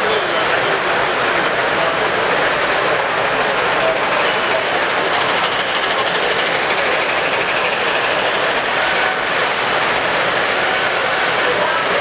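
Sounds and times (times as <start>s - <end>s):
model trains running on track: 0.0s - 12.0s
hall noise: 0.9s - 12.0s.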